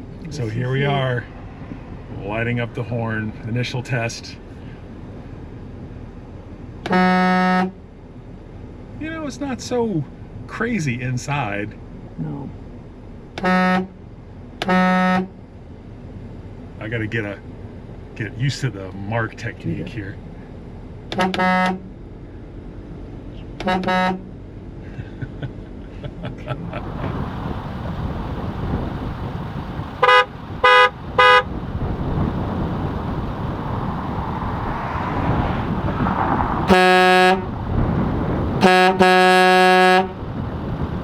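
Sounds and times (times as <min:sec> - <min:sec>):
air horn blasts: 0:06.8 - 0:07.8, 0:13.4 - 0:14.0, 0:14.6 - 0:15.4, 0:21.1 - 0:21.9, 0:23.6 - 0:24.3, 0:30.0 - 0:31.5, 0:36.7 - 0:37.6, 0:38.6 - 0:40.2.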